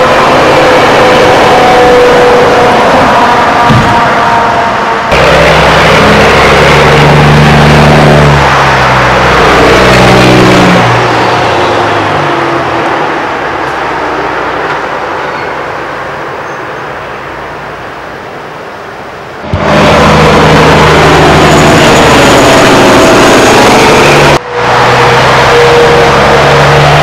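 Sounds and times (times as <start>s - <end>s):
road noise: 0.0s - 27.0s
truck diesel engine passing: 0.0s - 27.0s.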